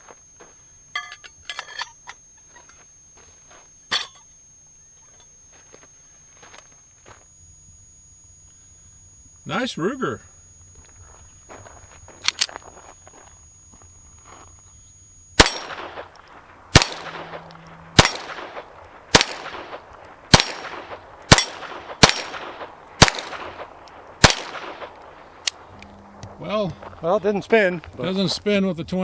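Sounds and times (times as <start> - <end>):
steel plate clanging: 0.9 - 2.8, 3.9 - 4.3
rifle shots: 15.4 - 25.6.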